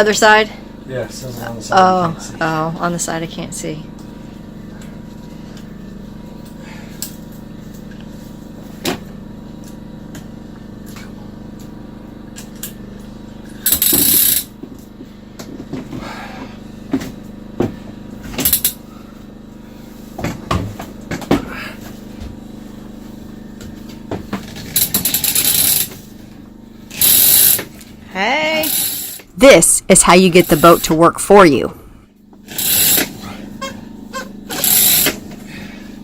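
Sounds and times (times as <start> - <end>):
steady low hum: 0.0 - 36.0
winch ratcheting: 24.7 - 25.9, 26.9 - 27.8, 28.6 - 29.3, 32.5 - 33.1, 34.5 - 35.2.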